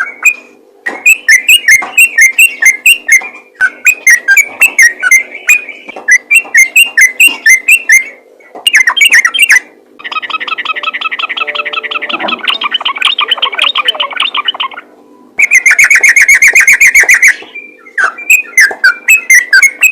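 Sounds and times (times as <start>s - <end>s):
bird rattling trill: 0.0s - 8.1s, 15.4s - 19.9s
bird singing whistled notes: 0.0s - 19.9s
faint steady hum: 0.0s - 19.9s.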